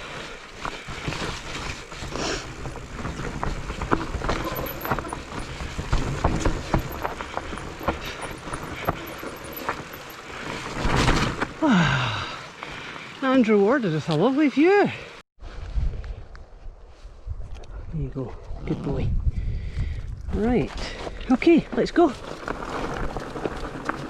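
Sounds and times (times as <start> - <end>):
bike tyres over dirt: 0.0 - 13.1, 20.2 - 24.0
bike rattling and knocking: 0.5 - 11.6, 22.2 - 24.0.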